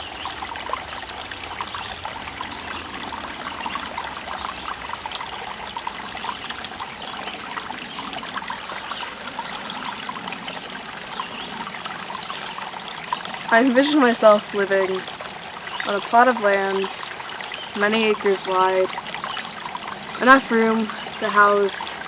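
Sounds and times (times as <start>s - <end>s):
creek babbling over rocks: 0.0s - 22.0s.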